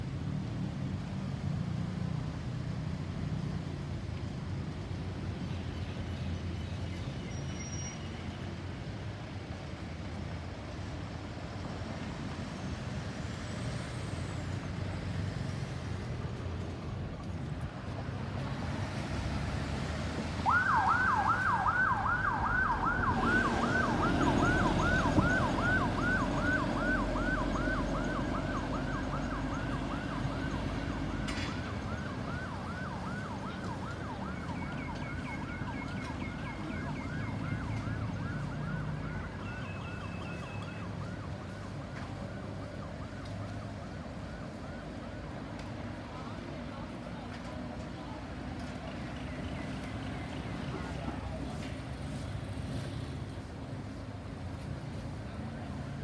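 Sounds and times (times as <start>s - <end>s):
road traffic rumble: 0.0s - 56.0s
ambulance siren yelping: 20.4s - 45.4s.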